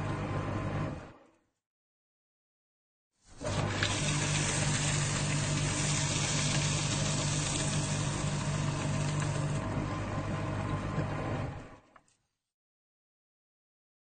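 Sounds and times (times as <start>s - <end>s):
paper shredder running: 3.3s - 11.8s.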